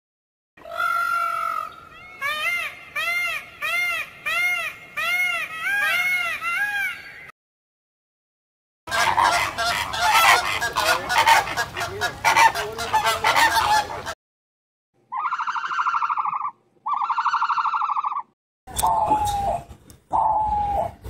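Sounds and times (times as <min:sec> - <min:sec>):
geese honking: 0:08.9 - 0:14.2
long buzzy calls: 0:15.1 - 0:21.0.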